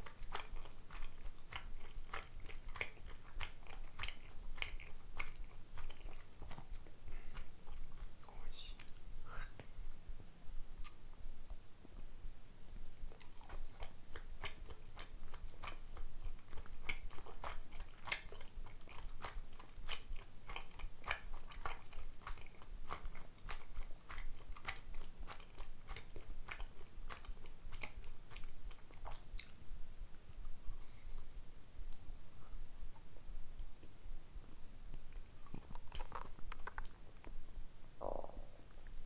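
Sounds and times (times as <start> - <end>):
chewing mouth clicks: 0.0 - 9.1, 9.9 - 11.6, 13.1 - 29.6, 34.9 - 37.0.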